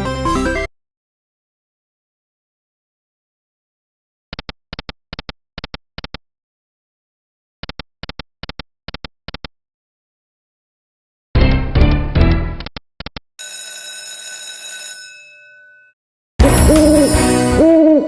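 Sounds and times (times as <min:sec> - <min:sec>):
game jingle: 0:16.4 - 0:17.8.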